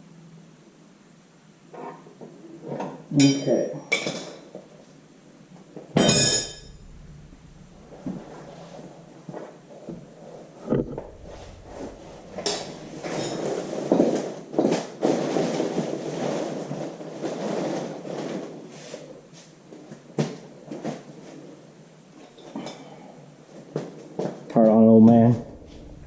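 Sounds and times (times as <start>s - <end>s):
metal scraping: 6.1s - 9.1s, 10.7s - 13.8s, 25.2s - 26.0s.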